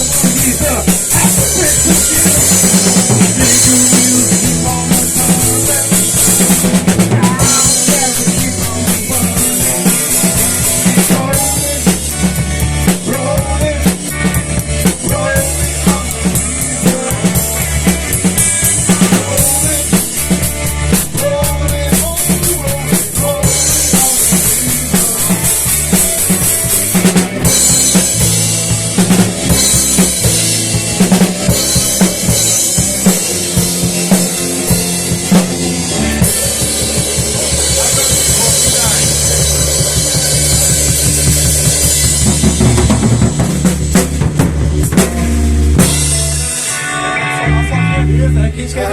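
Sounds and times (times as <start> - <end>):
drum kit: 0.0 - 48.8
bass line: 0.0 - 48.9
pitched instruments: 14.3 - 48.9.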